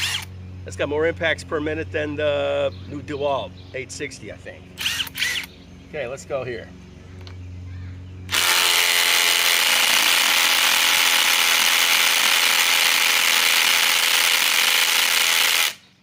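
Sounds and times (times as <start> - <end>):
impact driver hammering: 8.3 - 15.8.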